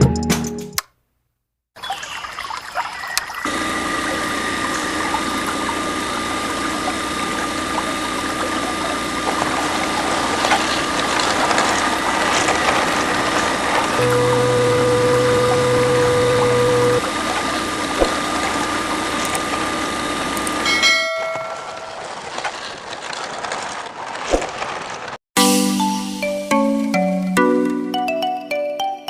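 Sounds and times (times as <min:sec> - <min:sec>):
small electric motor whining: 0:03.5 - 0:20.7
steady tonal hum: 0:03.5 - 0:22.2.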